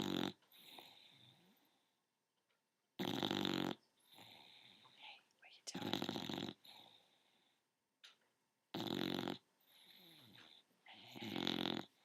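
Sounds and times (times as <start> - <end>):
dog snoring: 0.0 - 2.0, 3.0 - 5.0, 5.7 - 7.6, 8.7 - 12.0
quiet dog breath: 3.8 - 7.8, 9.5 - 12.0.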